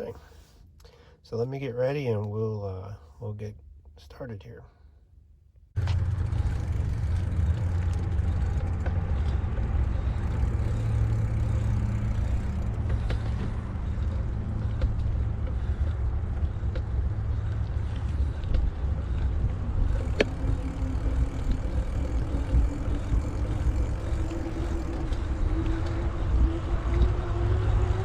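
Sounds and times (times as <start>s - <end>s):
wind rumble on microphone: 5.8s - 28.0s.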